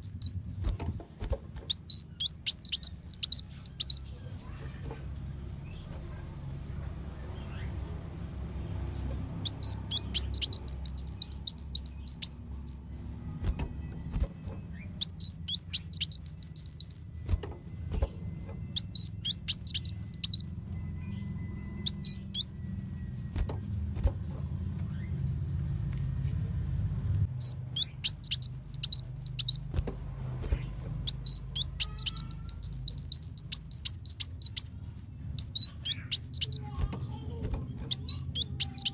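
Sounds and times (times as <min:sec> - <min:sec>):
sunbird high chattering song: 0:00.0 - 0:38.9.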